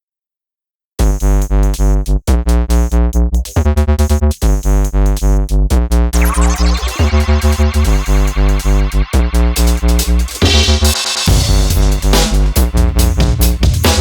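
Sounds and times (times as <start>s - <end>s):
electronic music with drum machine: 4.4s - 14.0s
rising synth sweep: 6.2s - 12.0s.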